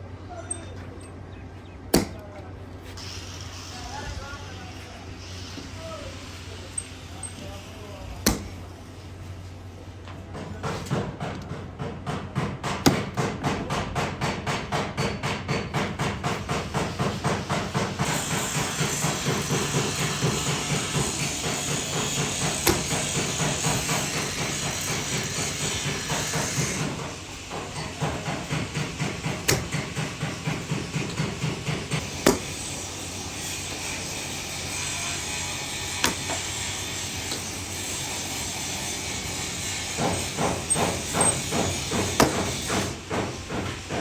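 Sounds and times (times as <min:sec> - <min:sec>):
louder knocks on metal: 0:01.9 - 0:02.2, 0:10.4 - 0:32.5.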